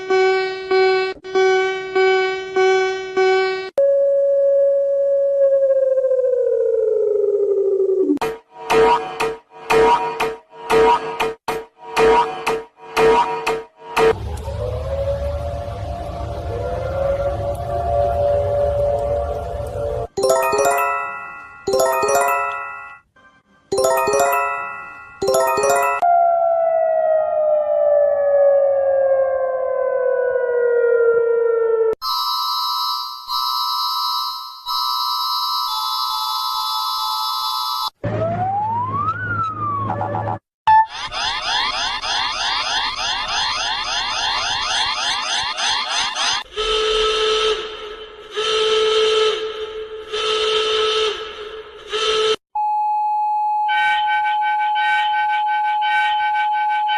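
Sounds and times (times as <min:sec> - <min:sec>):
falling siren-like tone: 0:03.8 - 0:08.2, 0:14.0 - 0:21.1, 0:25.2 - 0:32.0, 0:37.4 - 0:45.9, 0:52.6 - 0:56.9
shrill multi-tone alert signal: 0:20.2 - 0:23.0, 0:23.7 - 0:26.2, 0:32.0 - 0:38.0, 0:53.5 - 0:56.9
steady high tone: 0:20.2 - 0:23.0, 0:23.7 - 0:26.2.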